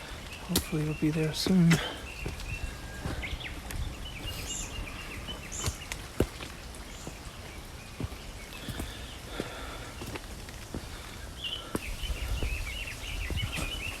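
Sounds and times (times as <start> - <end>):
bird calling: 0.0 - 14.0
footsteps on a trail: 0.0 - 14.0.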